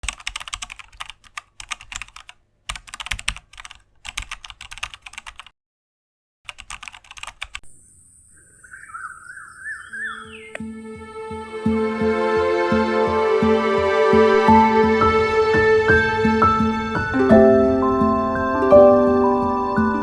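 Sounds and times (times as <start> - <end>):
computer keyboard typing: 0.0 - 5.5, 6.5 - 7.6.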